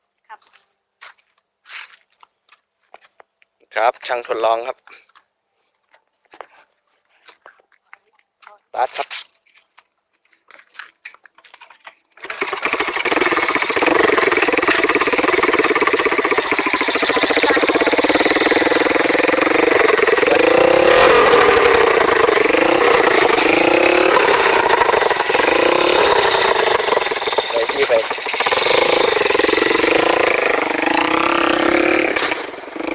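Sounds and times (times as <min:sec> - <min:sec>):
engine running with rapid firing beat: 0:12.4 - 0:32.9.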